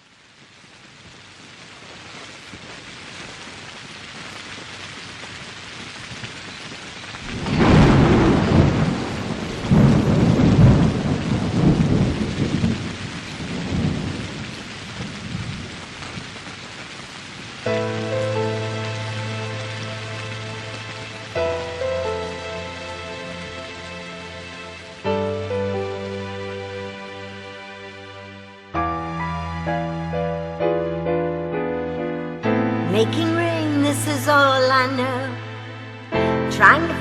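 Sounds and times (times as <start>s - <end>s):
steady rain: 0.0s - 37.0s
rolling thunderclap: 7.2s - 27.0s.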